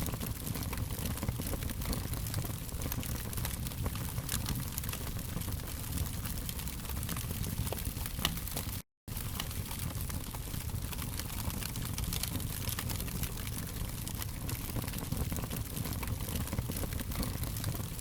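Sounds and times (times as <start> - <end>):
low rumble of flames: 0.0 - 18.0
wood fire crackling: 0.0 - 18.0.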